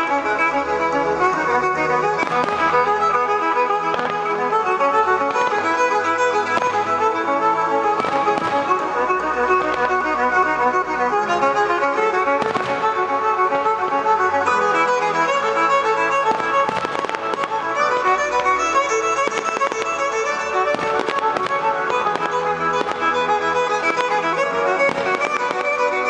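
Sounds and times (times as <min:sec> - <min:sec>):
violin-led music: 0:00.0 - 0:26.0
fireworks cracking and banging: 0:02.1 - 0:03.0, 0:03.9 - 0:04.3, 0:05.3 - 0:05.6, 0:07.9 - 0:10.0, 0:12.4 - 0:13.0, 0:15.3 - 0:26.0.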